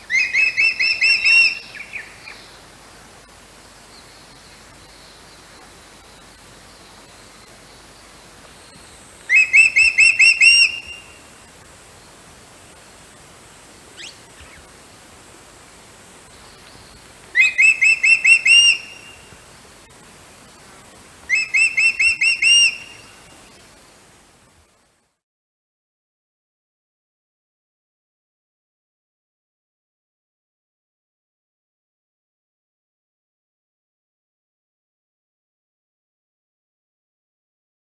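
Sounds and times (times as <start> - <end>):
bird whistling call: 0.0 - 2.5, 9.3 - 11.2, 14.0 - 14.6, 17.4 - 19.3, 21.3 - 23.3.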